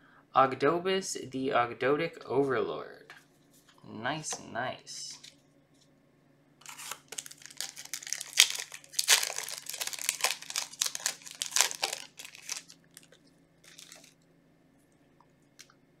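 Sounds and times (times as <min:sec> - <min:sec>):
foil wrapper crinkling and tearing: 0:06.6 - 0:14.2.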